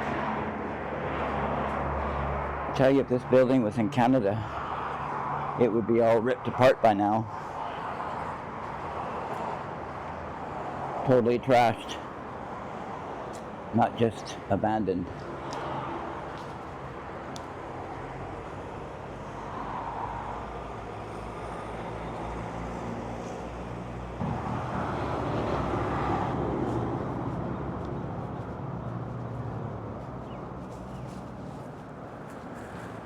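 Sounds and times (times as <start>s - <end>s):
vehicle engine running: 24.2s - 31.8s.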